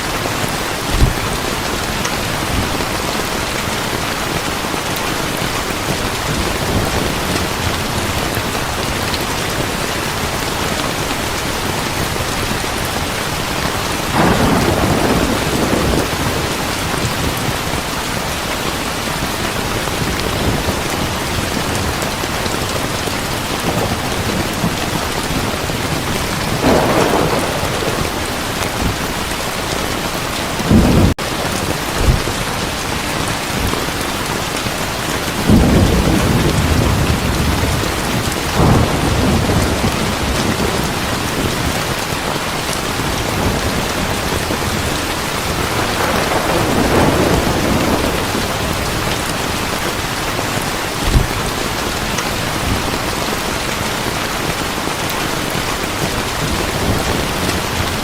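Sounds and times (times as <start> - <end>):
thunder rumbling: 0.0 - 54.8
heavy rain: 0.0 - 58.0
sharp clap of thunder: 0.4 - 2.9, 14.0 - 17.8, 23.6 - 29.7, 35.4 - 41.9, 45.6 - 49.4.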